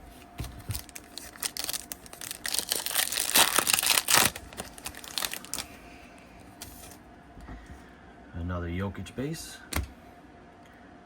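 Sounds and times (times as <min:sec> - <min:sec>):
foil wrapper crinkling and tearing: 0:00.4 - 0:05.8.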